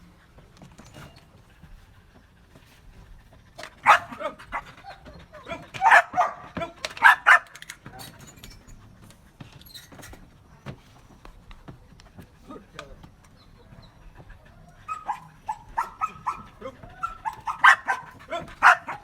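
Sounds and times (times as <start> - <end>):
dog barking: 3.8 - 8.1, 14.8 - 19.0.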